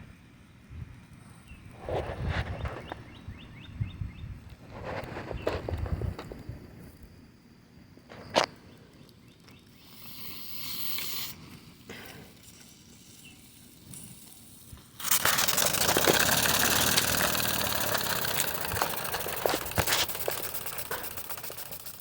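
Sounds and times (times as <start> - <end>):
intermittent steam hissing: 9.7 - 22.0.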